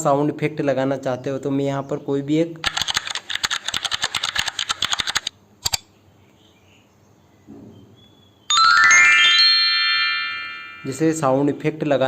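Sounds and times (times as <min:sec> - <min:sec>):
rapid keyboard typing: 0:02.6 - 0:05.3
mouse double click: 0:05.6 - 0:05.9
bright rising chime effect: 0:08.5 - 0:11.4.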